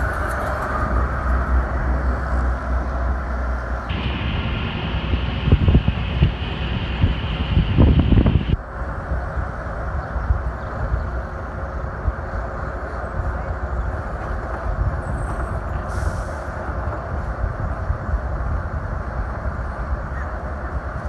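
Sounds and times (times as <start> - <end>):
low rumbles: 0.0 - 8.6
traffic and road noise: 0.0 - 21.0
wind buffeting microphone: 0.0 - 21.0.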